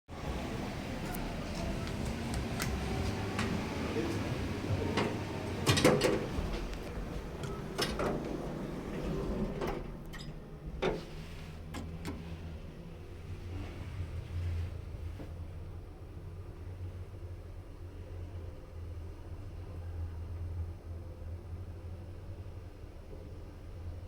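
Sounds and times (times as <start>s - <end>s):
low rumble: 0.1s - 11.6s
elevator car grinding and knocking: 0.1s - 15.3s.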